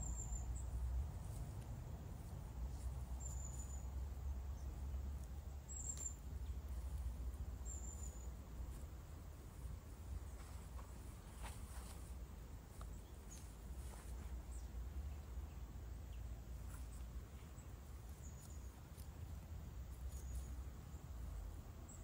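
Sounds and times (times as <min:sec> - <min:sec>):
bird chirps: 0:00.0 - 0:01.0, 0:02.7 - 0:08.8, 0:20.0 - 0:21.2
steady low rumble: 0:00.0 - 0:22.0.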